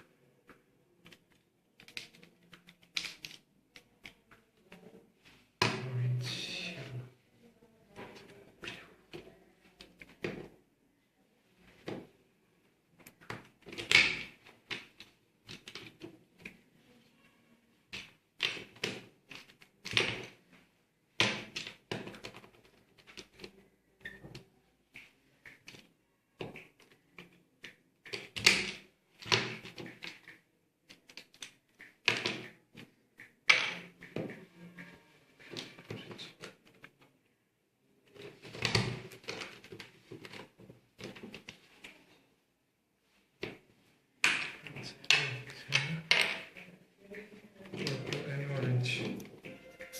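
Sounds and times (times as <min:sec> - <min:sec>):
plastic puzzle cube pieces clicking: 0:00.5 - 0:04.4, 0:13.0 - 0:16.6, 0:17.9 - 0:20.4, 0:21.2 - 0:37.1.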